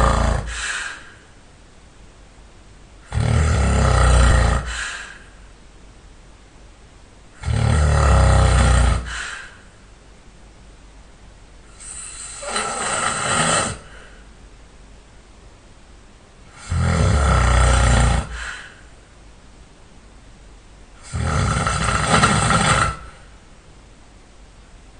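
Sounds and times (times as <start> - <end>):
person snoring loudly: 0.0 - 1.1, 3.0 - 5.2, 7.4 - 9.4, 11.7 - 14.2, 16.5 - 18.8, 21.0 - 23.3
breathy breath: 0.0 - 1.4, 3.2 - 5.5, 8.4 - 9.9, 11.7 - 14.4, 16.5 - 19.0.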